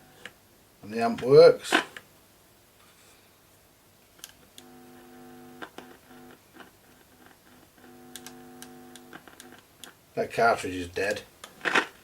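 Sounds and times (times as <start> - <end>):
record clicks: 5.6 - 10.0.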